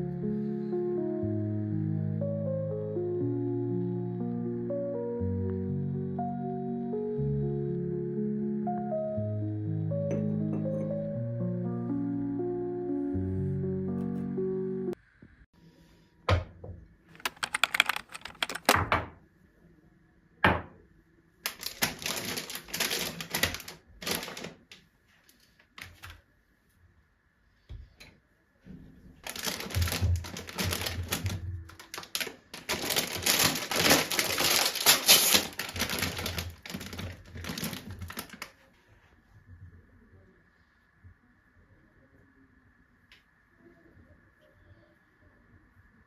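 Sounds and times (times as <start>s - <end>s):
crinkling handling sounds: 17.2s - 18.8s, 21.4s - 26.3s, 29.2s - 38.9s.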